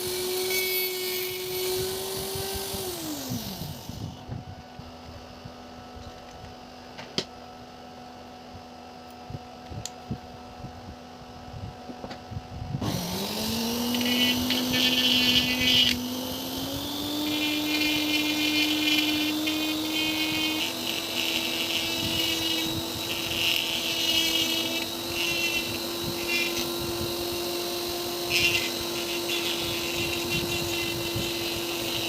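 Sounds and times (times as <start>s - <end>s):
small electric motor whining: 0.0s - 4.4s, 12.7s - 32.0s
high rasping rubbing noises: 28.3s - 32.0s.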